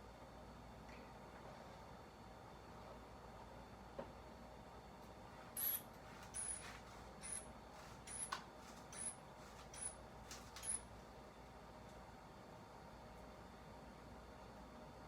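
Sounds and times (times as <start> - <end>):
hand bulb squeezing air hiss: 5.6 - 6.6.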